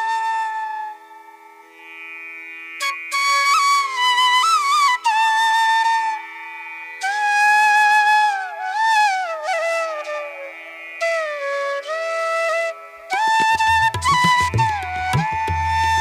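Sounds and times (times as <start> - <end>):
flute playing held notes: 2.8 - 6.4, 7.0 - 16.0.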